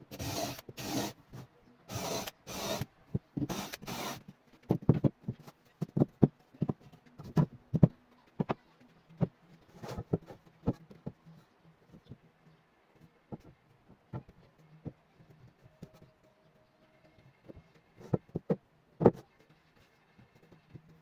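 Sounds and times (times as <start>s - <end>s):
wood rasping strokes: 0.1s - 1.2s, 1.9s - 2.8s.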